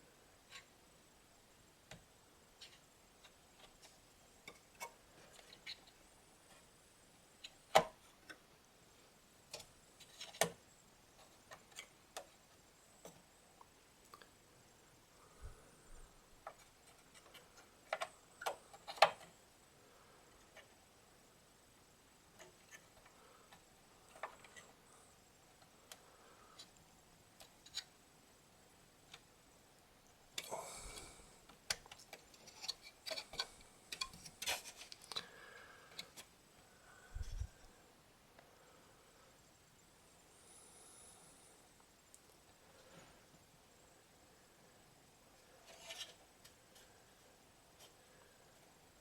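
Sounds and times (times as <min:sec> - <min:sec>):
faint clicks and ticks: 0:01.5 - 0:14.4, 0:16.0 - 0:19.5, 0:22.1 - 0:28.0, 0:28.9 - 0:37.7, 0:41.8 - 0:42.9.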